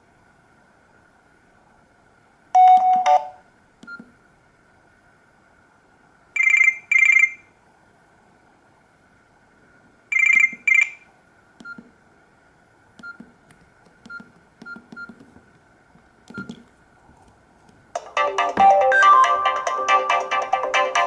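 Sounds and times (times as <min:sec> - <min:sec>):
polyphonic ringtone melody: 0:18.0 - 0:21.0.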